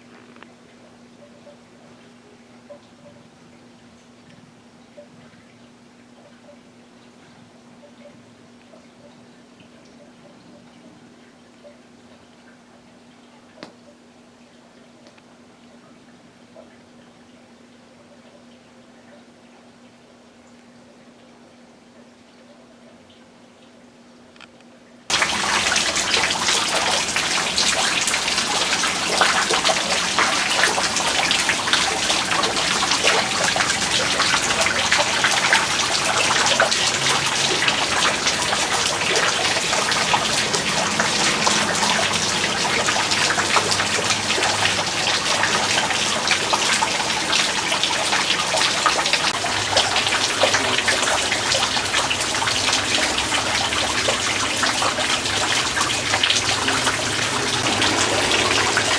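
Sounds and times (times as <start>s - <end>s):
tap water running: 25.1s - 58.9s.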